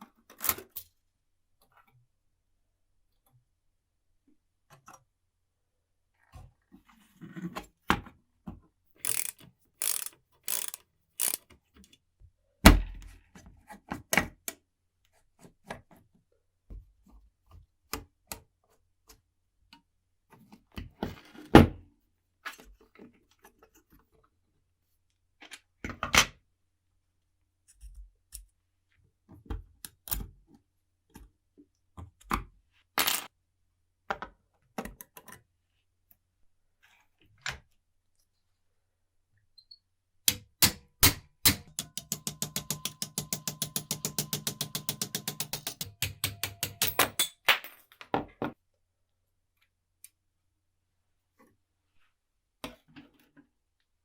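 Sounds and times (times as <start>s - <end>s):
small metal parts clicking: 9.0s - 11.4s, 41.6s - 47.4s.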